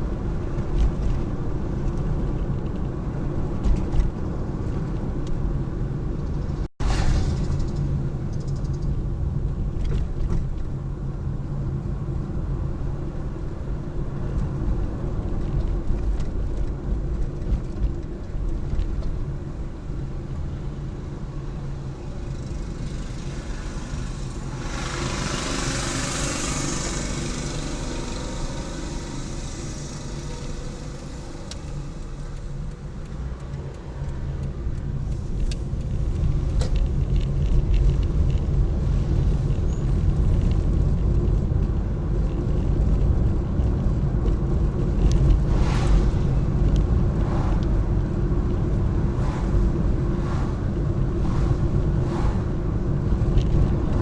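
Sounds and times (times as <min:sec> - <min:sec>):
car engine and tyres rumbling: 0:00.0 - 0:54.0
rushing noise: 0:22.7 - 0:32.7, 0:45.2 - 0:54.0.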